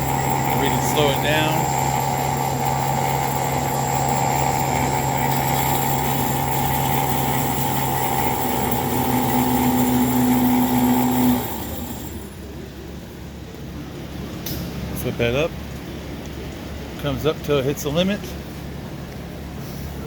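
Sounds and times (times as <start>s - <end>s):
bandsaw running with whine: 0.0s - 12.6s.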